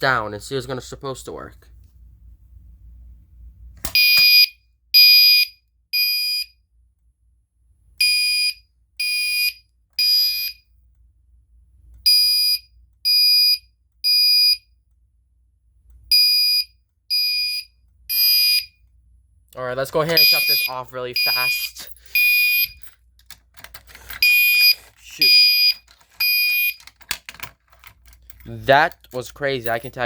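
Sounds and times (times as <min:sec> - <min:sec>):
fire alarm horn blasts: 0:04.0 - 0:06.6, 0:08.0 - 0:10.6, 0:16.1 - 0:18.7, 0:20.1 - 0:22.8, 0:24.2 - 0:26.8.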